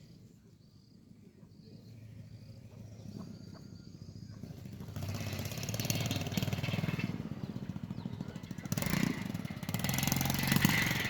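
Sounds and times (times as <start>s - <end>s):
small engine running: 4.3s - 11.0s.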